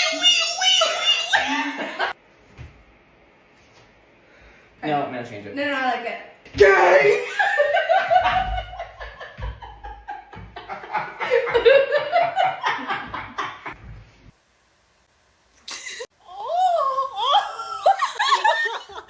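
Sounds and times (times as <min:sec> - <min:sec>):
people laughing: 0:01.0 - 0:02.2, 0:07.1 - 0:13.8, 0:17.3 - 0:19.0.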